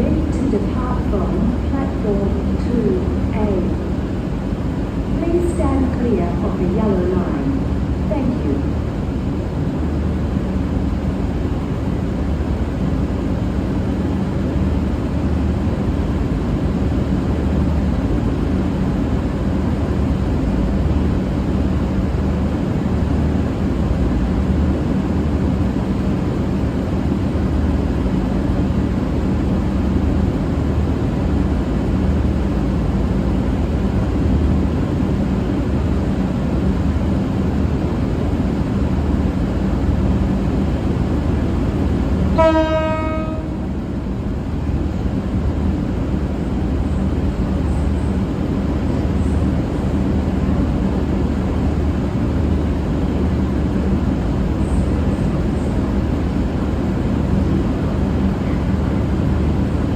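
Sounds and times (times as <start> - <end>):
diesel engines idling: 0.0 - 7.7.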